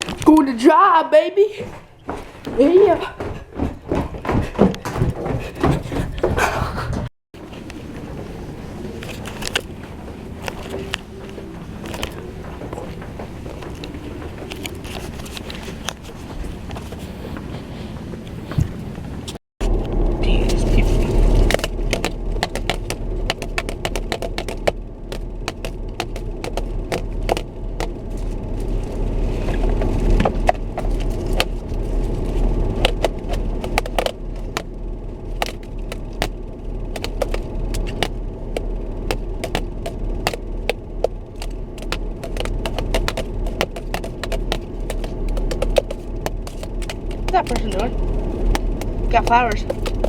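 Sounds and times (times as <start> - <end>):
car road rumble: 2.0 - 50.0.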